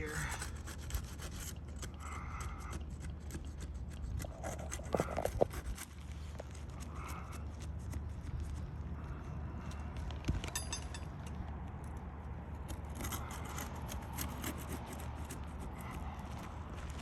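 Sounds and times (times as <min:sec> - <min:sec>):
scraping and crackling of shingles: 0:00.0 - 0:08.7, 0:12.5 - 0:17.0.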